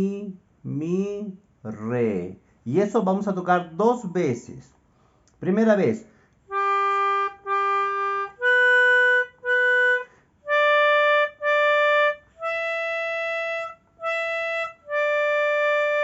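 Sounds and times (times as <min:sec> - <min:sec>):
melodica playing slow melody: 0:06.5 - 0:16.0.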